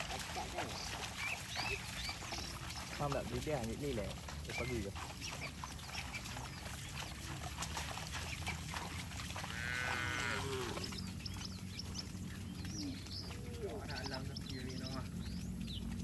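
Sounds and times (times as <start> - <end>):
cow mooing: 9.4 - 11.0.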